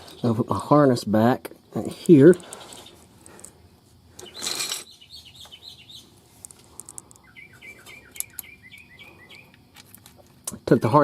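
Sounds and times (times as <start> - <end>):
bird chirping: 2.3 - 3.4, 4.2 - 9.8
rustling scrape: 4.2 - 4.9.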